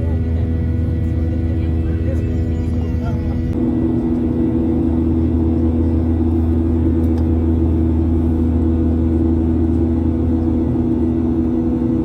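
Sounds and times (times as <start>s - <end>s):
vehicle engine drone: 0.0s - 12.0s.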